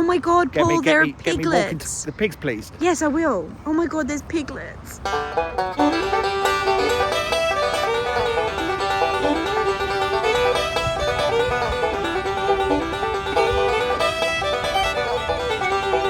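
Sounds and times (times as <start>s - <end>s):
upbeat bluegrass banjo music: 5.0s - 16.0s.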